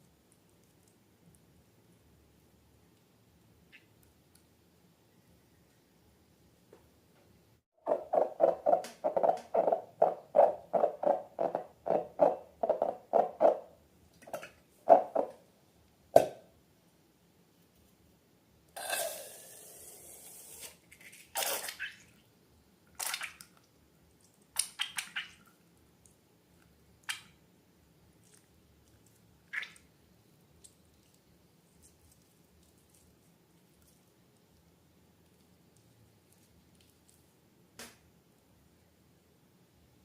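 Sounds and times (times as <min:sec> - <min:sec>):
slime squelching: 0:28.1 - 0:37.4.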